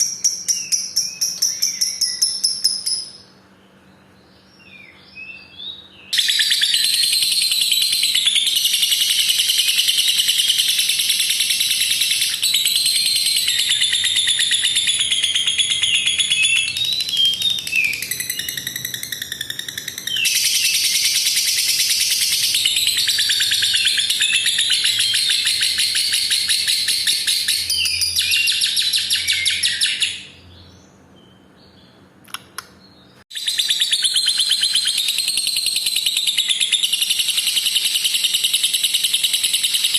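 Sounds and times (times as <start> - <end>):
bird chirps: 0.0 - 39.9
lovebird chattering trill: 6.2 - 30.3, 33.4 - 39.9.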